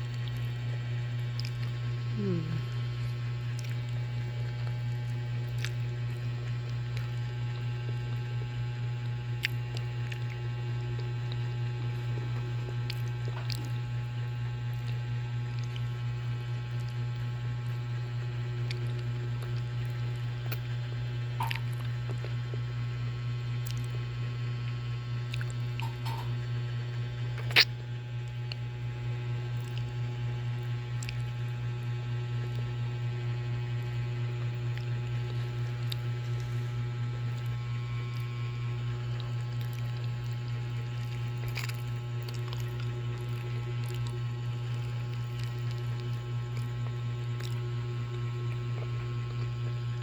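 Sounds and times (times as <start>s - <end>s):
low electrical hum: 0.0s - 50.0s
mouth noises of eating: 0.0s - 50.0s.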